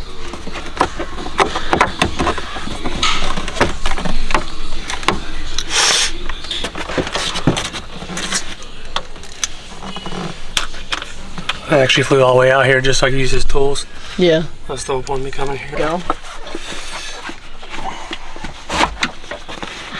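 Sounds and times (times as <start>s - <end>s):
hand tools clicking and rattling: 0.0s - 13.2s.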